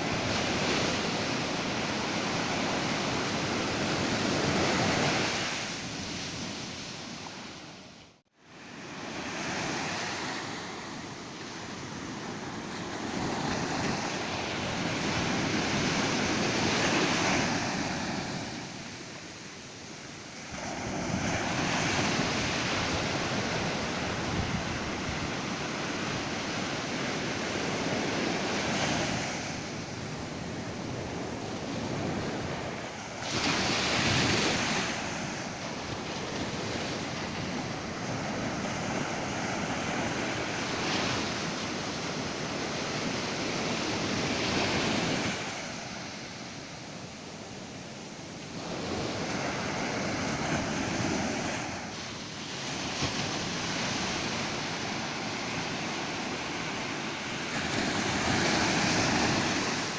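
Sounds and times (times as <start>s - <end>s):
ocean surf breaking on beach: 0.0s - 59.9s.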